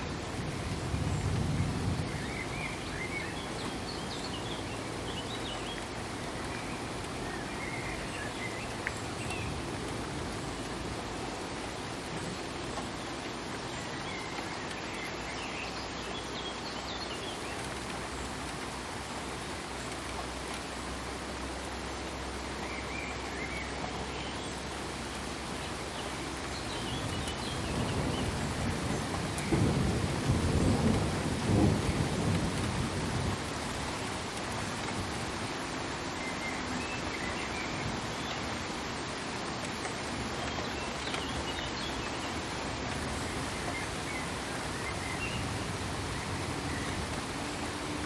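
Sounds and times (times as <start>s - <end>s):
low rumble of thunder: 0.0s - 11.2s, 26.7s - 35.2s, 42.7s - 48.0s
steady rain falling: 0.0s - 48.0s.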